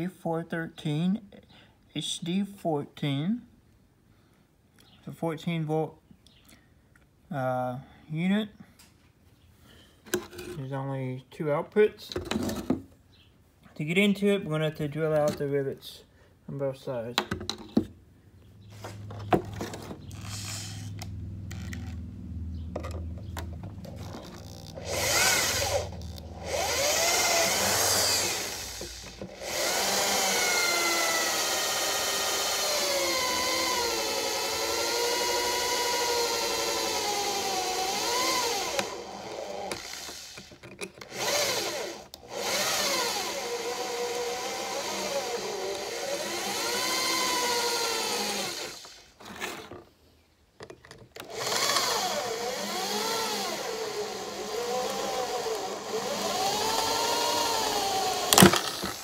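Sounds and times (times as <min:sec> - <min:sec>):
electric drill squealing: 0:19.7 - 0:22.0, 0:23.6 - 0:49.2, 0:51.3 - 0:59.0.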